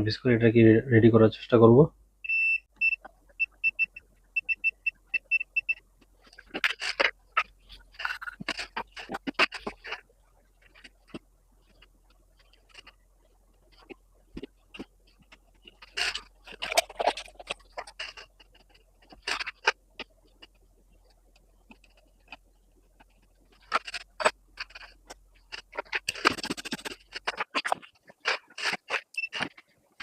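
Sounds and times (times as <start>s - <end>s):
scraping and rustling: 6.0s - 29.8s.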